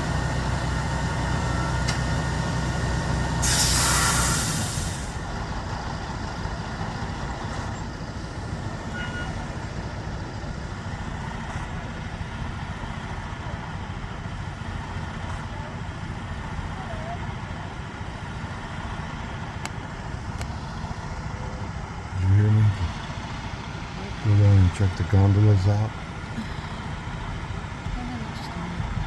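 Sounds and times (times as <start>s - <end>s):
diesel engine idling: 0.0s - 29.0s
air brakes hissing: 3.4s - 5.3s
low steady rumble: 19.4s - 29.0s.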